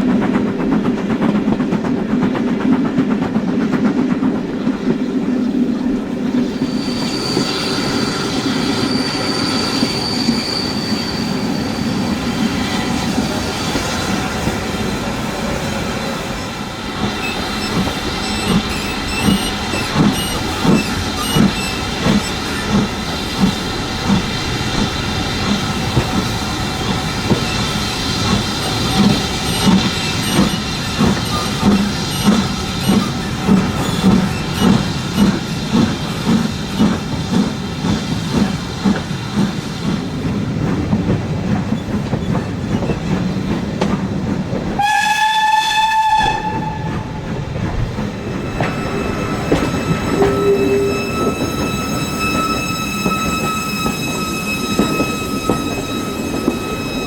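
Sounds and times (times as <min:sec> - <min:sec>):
steam locomotive exhaust beats: 0:00.0 - 0:57.0
steam whistle: 0:44.8 - 0:47.1, 0:48.7 - 0:57.0.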